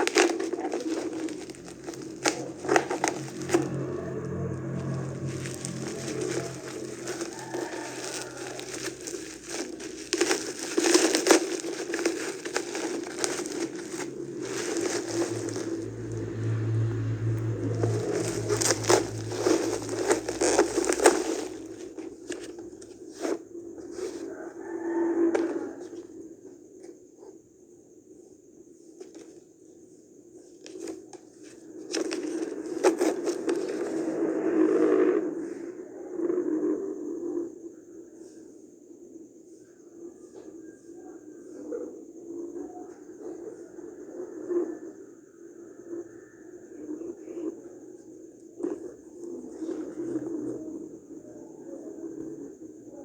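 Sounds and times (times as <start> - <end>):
packaging crinkling: 0.0 - 3.9, 4.7 - 16.2, 17.7 - 22.5
rustling: 0.0 - 24.4.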